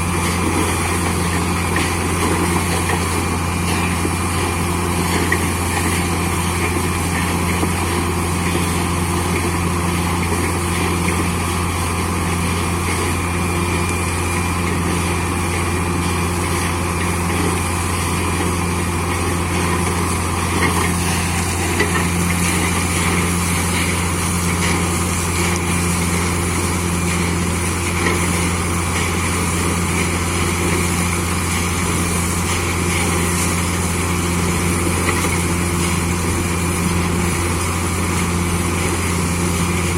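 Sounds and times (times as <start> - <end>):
drilling rig machine drone: 0.0 - 39.9.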